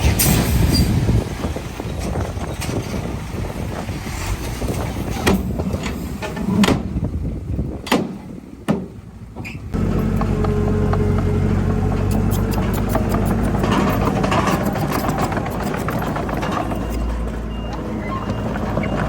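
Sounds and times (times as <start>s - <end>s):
diesel machinery rumble: 0.0s - 19.0s
steady engine drone: 9.7s - 18.9s
metallic clanks: 11.9s - 17.2s.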